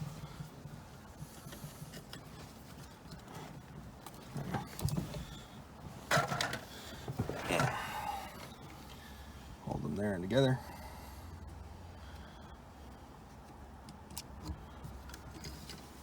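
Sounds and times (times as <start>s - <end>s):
connectors clicking and rustling: 13.4s - 16.0s.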